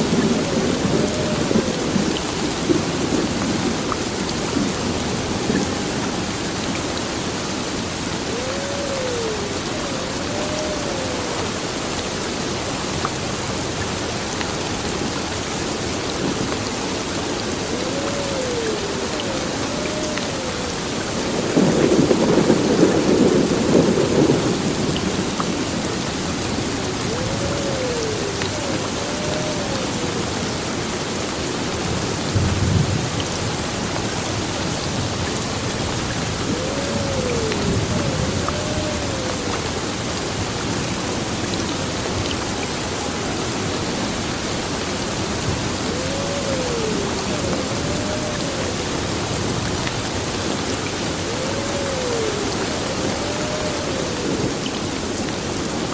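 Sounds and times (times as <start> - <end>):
heavy rain pouring: 0.0 - 55.9
thunder rumbling: 17.1 - 30.9.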